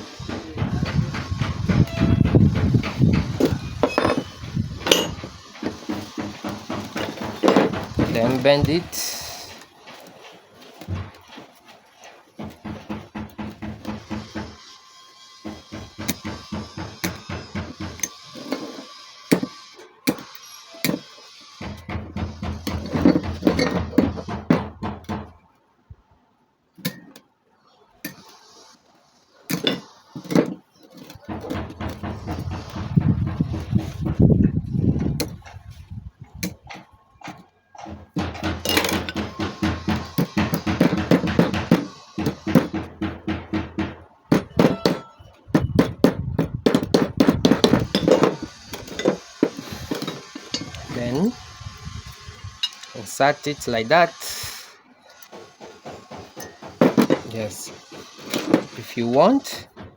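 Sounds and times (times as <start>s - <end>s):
metal clinking and knocking: 0.1s - 11.5s, 12.4s - 14.6s, 15.4s - 25.3s, 29.5s - 35.4s, 36.4s - 51.0s, 52.6s - 52.9s, 55.2s - 59.0s
hammer striking metal: 0.2s - 9.2s, 37.8s - 51.2s.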